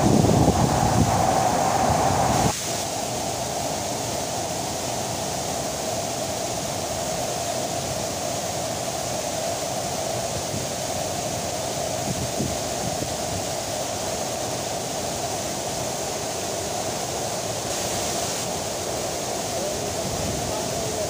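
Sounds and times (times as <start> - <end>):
wind rumble on microphone: 0.0 - 2.6, 12.0 - 13.6, 19.9 - 21.0
waterfall rushing: 0.0 - 21.0.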